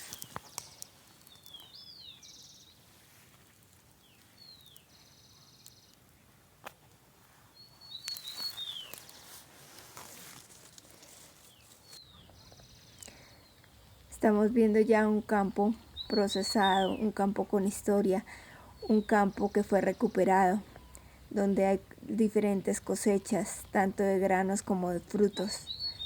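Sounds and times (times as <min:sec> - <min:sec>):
soft outdoor hiss: 0:00.0 - 0:26.0
buzzy bird trills: 0:07.6 - 0:09.2, 0:14.2 - 0:18.2, 0:18.8 - 0:26.0
bird whistled calls: 0:07.8 - 0:09.0, 0:25.2 - 0:26.0.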